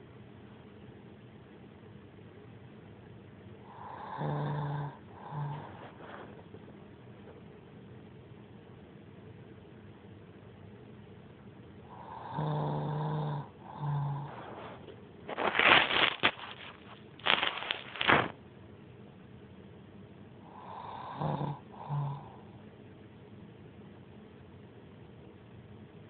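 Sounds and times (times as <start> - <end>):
woman snoring: 3.7 - 6.0, 11.9 - 14.7, 20.5 - 22.5.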